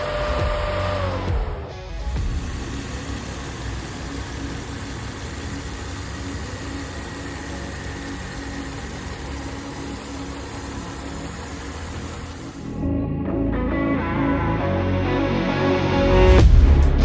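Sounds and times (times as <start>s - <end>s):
car engine idling: 2.1s - 12.8s.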